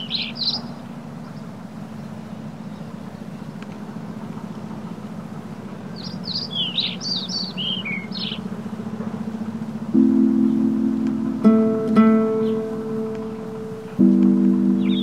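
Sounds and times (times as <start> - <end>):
songbird chirping: 0.0 - 15.0
low ambient rumble: 8.0 - 15.0.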